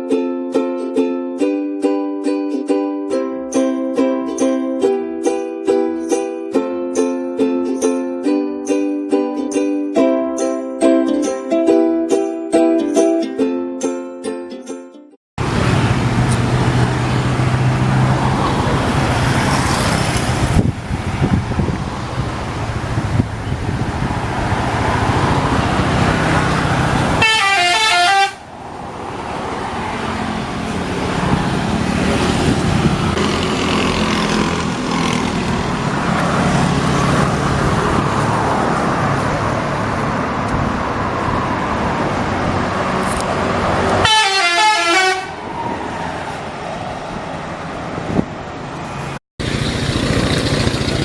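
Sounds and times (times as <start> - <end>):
traffic noise: 0.0 - 14.8, 15.4 - 51.0
bus engine running: 15.4 - 51.0
multi-note bus horn tune: 27.0 - 28.5, 44.0 - 45.4.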